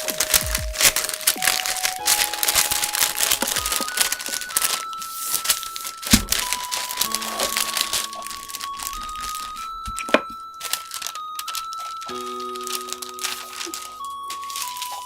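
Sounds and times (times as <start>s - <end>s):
packaging crinkling and tearing: 0.0s - 15.0s
slow melody of held notes: 0.0s - 15.0s
dull thump: 6.1s - 6.6s.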